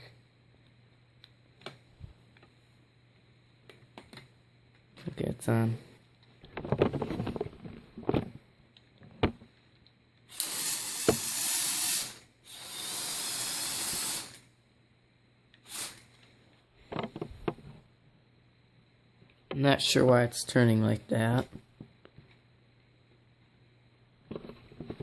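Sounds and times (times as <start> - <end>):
toy loader motors hissing rush: 10.3 - 14.5, 15.6 - 16.2.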